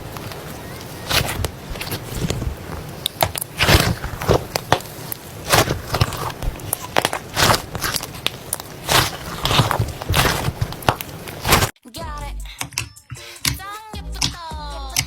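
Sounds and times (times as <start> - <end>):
slime popping and crackling: 0.0 - 11.7.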